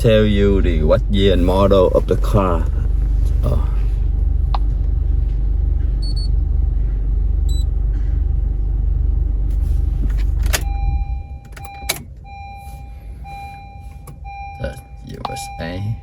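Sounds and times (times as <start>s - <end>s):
car engine idling: 0.0s - 16.0s
ignition click: 10.0s - 12.5s, 13.5s - 15.6s.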